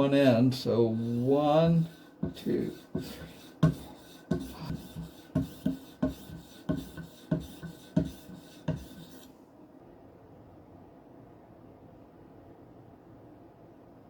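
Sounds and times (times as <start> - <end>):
knife rasping on strop: 0.9 - 9.3.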